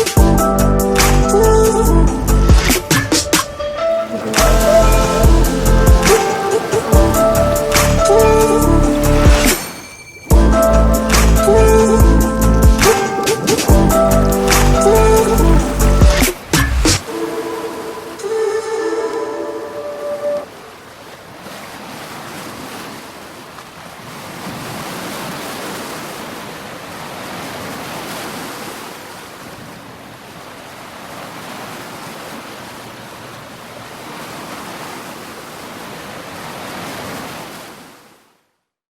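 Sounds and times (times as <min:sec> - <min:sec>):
sea waves breaking: 0:01.0 - 0:38.3.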